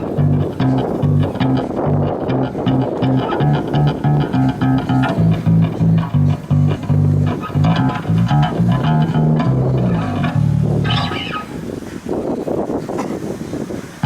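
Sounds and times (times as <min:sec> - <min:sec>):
plucked bass guitar line: 0:00.0 - 0:11.8
faint higher instrument notes: 0:02.5 - 0:11.9.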